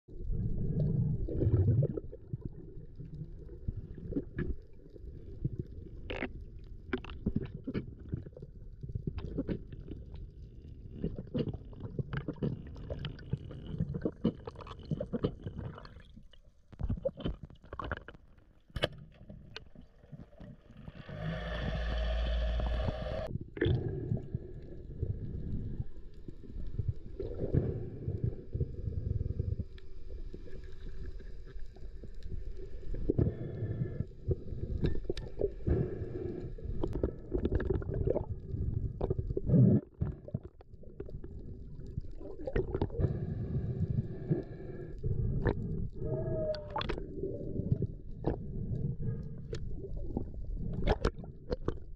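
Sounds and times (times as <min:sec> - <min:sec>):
muffled underwater rumble and gurgling: 0:00.1 - 0:51.9
pitched hum: 0:20.8 - 0:23.3.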